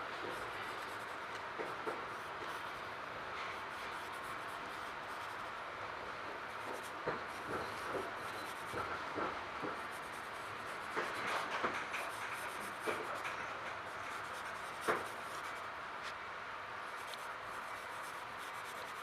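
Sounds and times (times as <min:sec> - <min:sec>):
train car hiss and rumble: 0:00.0 - 0:19.0
pencil scratching on paper: 0:00.3 - 0:01.2, 0:03.6 - 0:05.5, 0:06.5 - 0:08.9, 0:09.6 - 0:15.6, 0:16.9 - 0:19.0.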